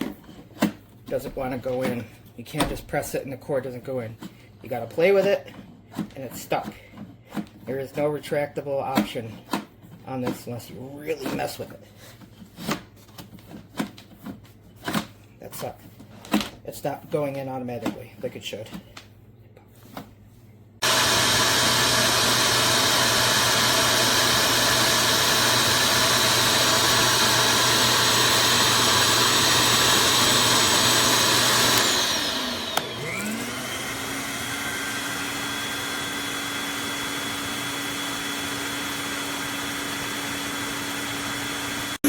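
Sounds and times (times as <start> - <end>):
shop vacuum running: 20.8 - 42.0.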